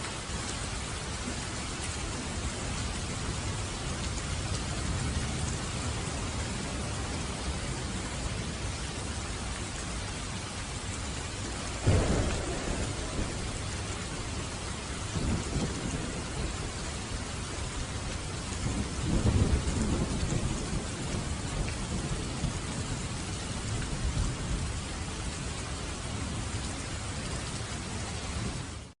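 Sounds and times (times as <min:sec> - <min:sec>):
heavy rain hissing: 0:00.0 - 0:29.0
rolling thunder: 0:11.8 - 0:25.3.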